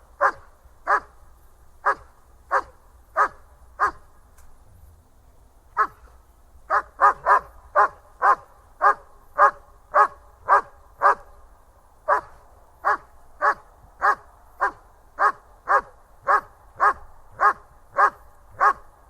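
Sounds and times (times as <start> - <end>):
dog barking: 0.2 - 1.1, 1.8 - 4.0, 5.8 - 6.1, 6.7 - 11.3, 12.1 - 18.9.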